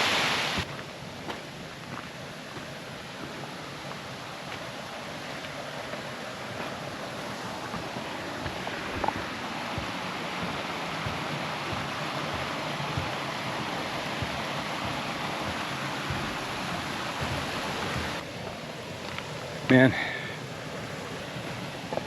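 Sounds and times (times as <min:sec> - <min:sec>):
creek water rushing: 0:00.0 - 0:22.0.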